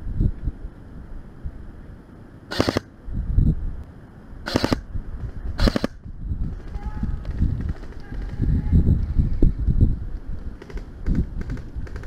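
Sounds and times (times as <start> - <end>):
airsoft gun firing bursts: 2.5 - 2.8, 4.5 - 4.9, 5.6 - 8.4, 10.6 - 12.0.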